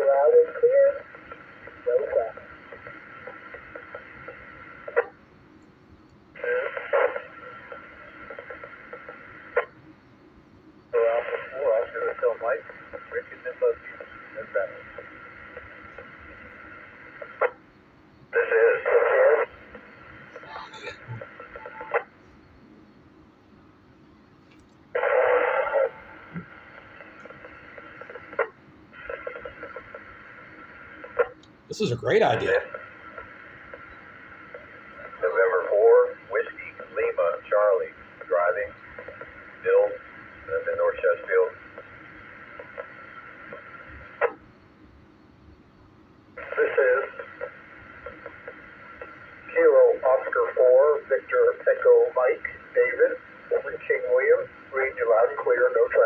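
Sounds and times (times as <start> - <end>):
garbled radio transmission: 0.0 - 5.2, 6.4 - 9.7, 10.9 - 17.6, 18.3 - 22.2, 25.0 - 44.4, 46.4 - 56.0
radio hiss: 0.0 - 5.2, 6.3 - 9.8, 10.8 - 23.0, 24.9 - 44.6, 46.3 - 56.0
radio squelch burst: 18.3 - 22.5, 25.0 - 44.4, 46.4 - 56.0.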